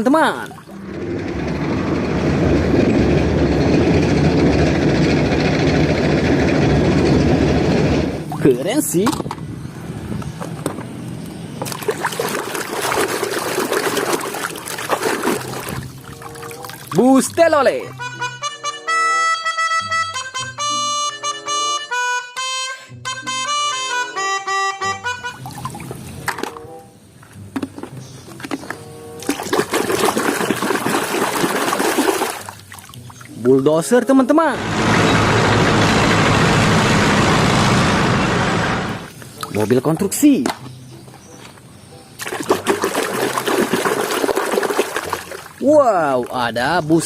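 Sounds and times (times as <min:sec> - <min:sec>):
water running and splashing: 0:11.6 - 0:17.2, 0:29.2 - 0:33.4, 0:42.2 - 0:45.6.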